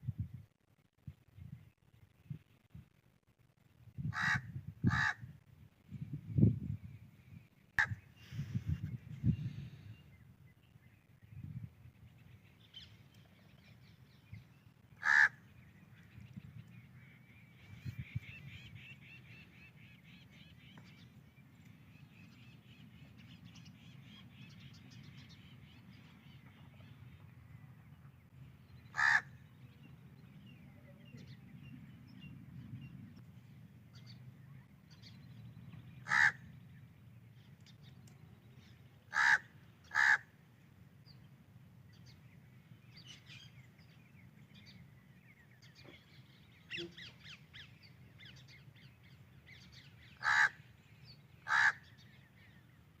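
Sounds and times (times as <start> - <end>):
crow cawing: 4.1 - 5.2, 15.0 - 15.4, 29.0 - 29.4, 36.0 - 36.4, 39.1 - 40.3, 50.2 - 50.6, 51.4 - 51.9
small birds chirping: 5.9 - 53.0.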